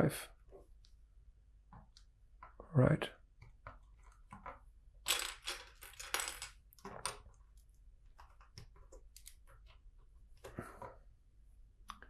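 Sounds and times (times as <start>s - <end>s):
plastic bricks clattering: 4.4s - 7.3s
small plastic clicks: 6.7s - 9.8s.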